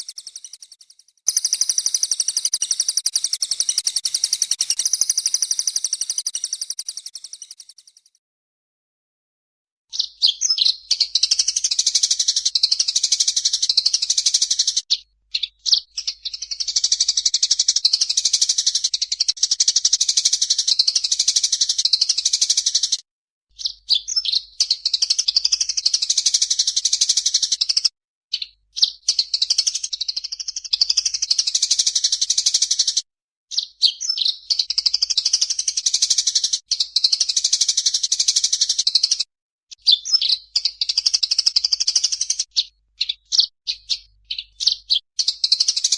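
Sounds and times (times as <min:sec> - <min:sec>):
songbirds chirping and trilling: 0:09.9 - 0:22.7, 0:23.6 - 0:32.4, 0:39.8 - 0:45.9.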